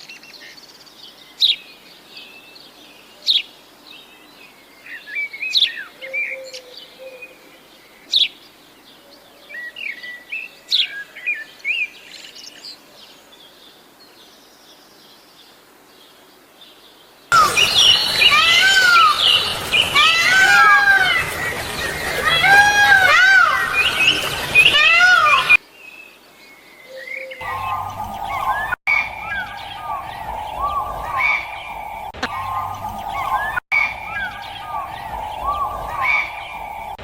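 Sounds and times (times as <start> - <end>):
birds chirping: 0.0 - 37.0
many overlapping bird calls: 0.0 - 37.0.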